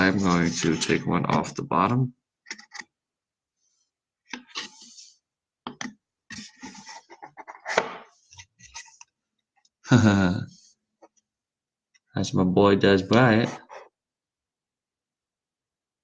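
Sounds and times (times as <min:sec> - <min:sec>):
cards rustling and scraping: 0:00.1 - 0:01.5, 0:03.6 - 0:09.2.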